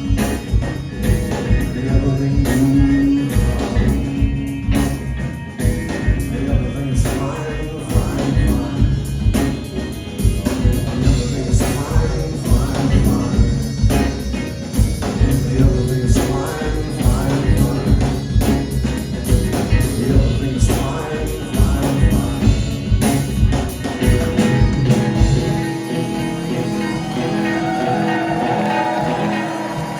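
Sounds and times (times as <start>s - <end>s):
rock band playing: 0.0s - 29.9s
person singing: 1.0s - 4.4s, 5.9s - 23.2s, 24.0s - 29.9s
guitar ringing: 22.7s - 29.9s.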